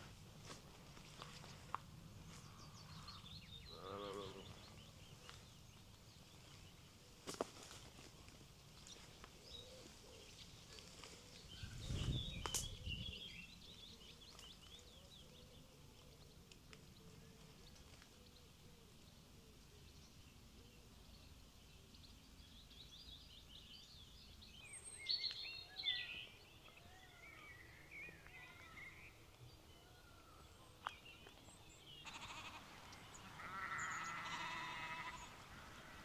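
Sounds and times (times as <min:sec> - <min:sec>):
small birds chirping: 0:01.0 - 0:07.8, 0:22.0 - 0:36.0
sheep bleating: 0:32.0 - 0:36.0.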